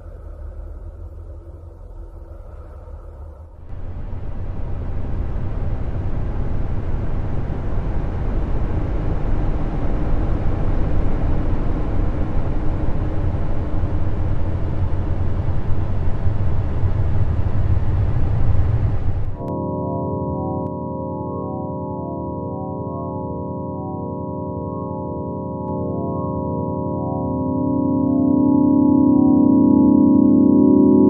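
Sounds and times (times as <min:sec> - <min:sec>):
deep steady rumble: 0:00.0 - 0:19.5.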